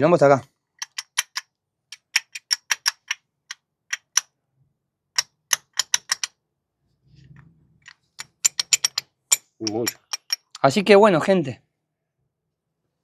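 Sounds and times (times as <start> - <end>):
metal knocking on metal: 8.2 - 10.6.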